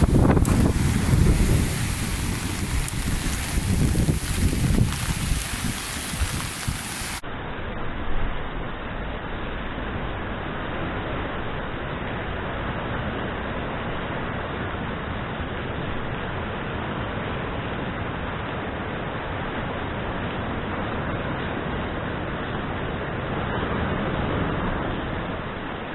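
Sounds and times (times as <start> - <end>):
strong wind: 0.0 - 7.2
surf rushing: 0.0 - 7.2.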